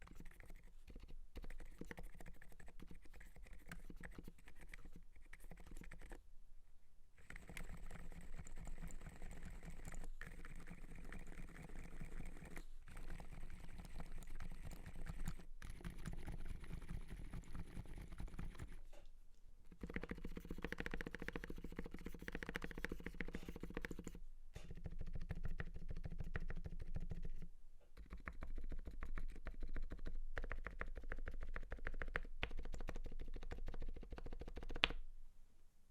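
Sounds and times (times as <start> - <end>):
muffled keyboard typing: 0.0 - 6.2, 7.2 - 18.9, 19.7 - 35.0.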